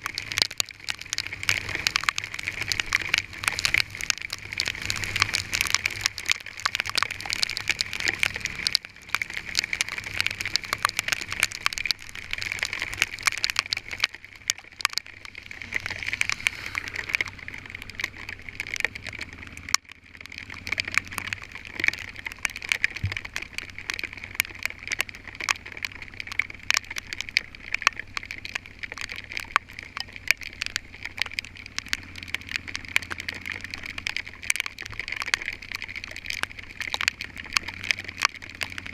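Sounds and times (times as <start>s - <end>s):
hailstones hitting a vehicle: 0.0s - 38.9s.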